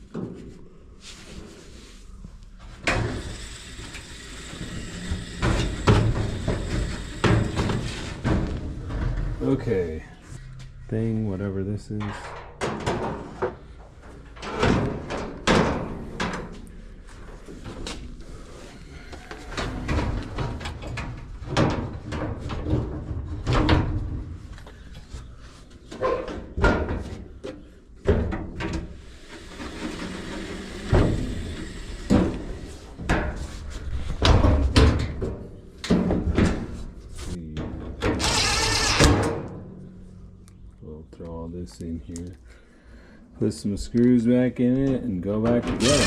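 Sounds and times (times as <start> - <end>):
dryer parts clunking and clattering: 5.4 - 9.8, 12.0 - 16.6, 19.2 - 24.5, 25.9 - 29.0, 32.1 - 39.8, 44.8 - 46.0.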